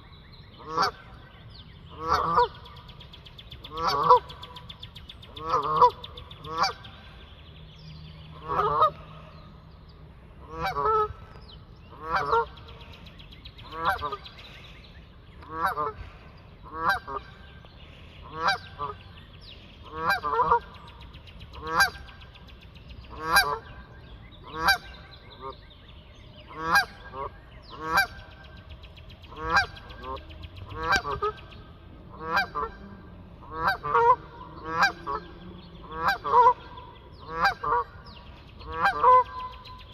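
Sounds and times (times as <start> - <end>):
geese honking: 0.6 - 1.3, 1.9 - 2.9, 3.7 - 4.7, 5.3 - 7.2, 8.3 - 9.3, 10.4 - 12.9, 13.6 - 14.7, 15.4 - 17.4, 18.2 - 19.2, 19.9 - 20.8, 21.6 - 22.2, 23.1 - 25.6, 26.4 - 28.5, 29.3 - 39.9.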